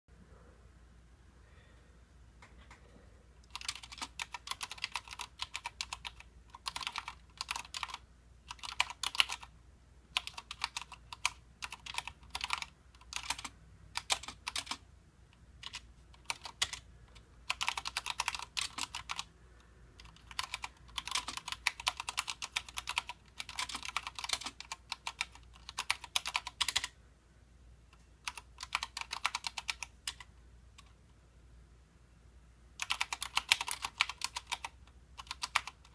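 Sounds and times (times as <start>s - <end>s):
mechanical keyboard key clacks: 3.5s - 9.5s, 32.8s - 35.9s.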